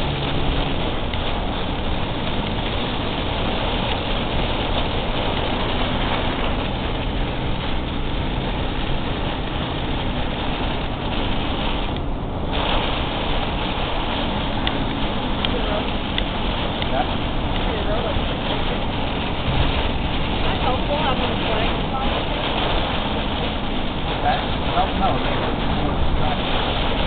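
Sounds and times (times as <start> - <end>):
low engine hum: 0.0 - 27.0
rain and road noise inside car: 0.0 - 27.0.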